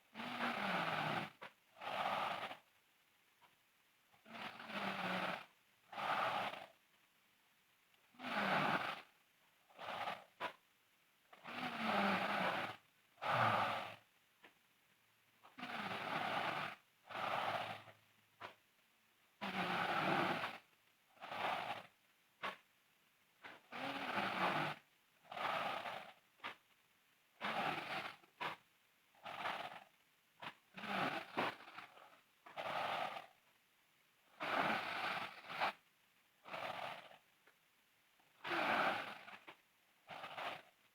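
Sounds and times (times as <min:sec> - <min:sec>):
girl snoring: 0:00.1 - 0:02.7, 0:04.2 - 0:06.8, 0:08.1 - 0:09.1, 0:09.7 - 0:10.4, 0:11.3 - 0:14.1, 0:15.4 - 0:18.0, 0:19.4 - 0:22.0, 0:23.4 - 0:26.2, 0:27.4 - 0:28.6, 0:29.2 - 0:33.4, 0:34.2 - 0:37.2, 0:38.2 - 0:40.8.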